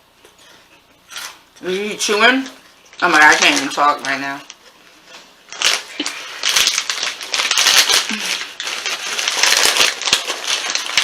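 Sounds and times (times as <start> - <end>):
chewing crunchy chips: 5.5 - 11.0.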